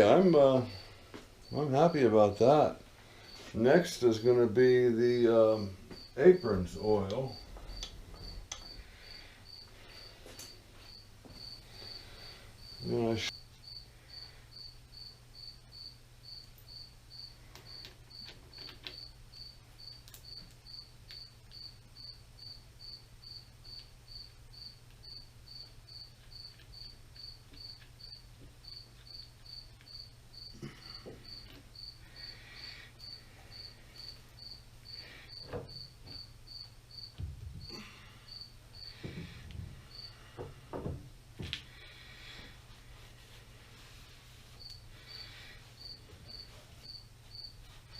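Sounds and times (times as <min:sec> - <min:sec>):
low electrical hum: 0:00.0 - 0:47.9
cricket chirping: 0:05.1 - 0:40.3, 0:44.6 - 0:47.8
knocks and rattles of parts handled: 0:39.0 - 0:41.7.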